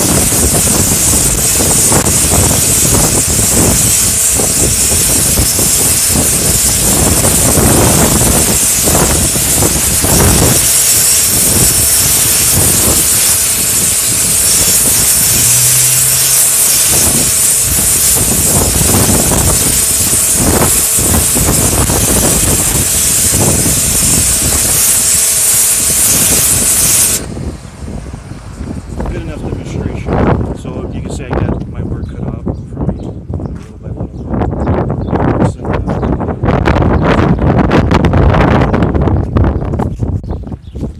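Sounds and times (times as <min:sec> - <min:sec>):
pump humming: 0:00.0 - 0:29.3
pressure washer spray hissing: 0:00.0 - 0:30.2.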